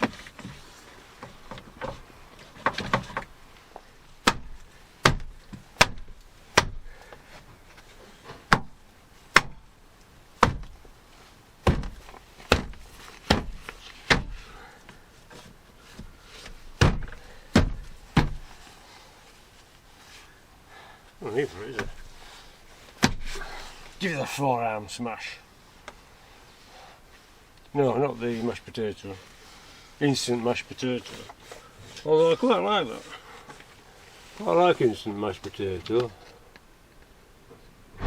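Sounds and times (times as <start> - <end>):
hard blows on car door: 11.6 - 14.4, 16.8 - 18.5.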